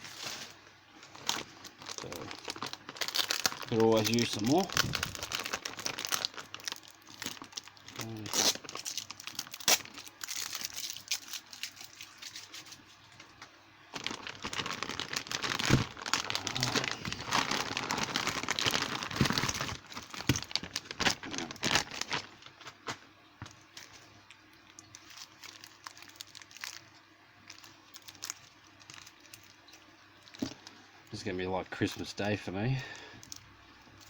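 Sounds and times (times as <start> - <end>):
packing wrap crinkling and tearing: 0.0 - 12.9, 13.9 - 32.1, 32.9 - 34.0.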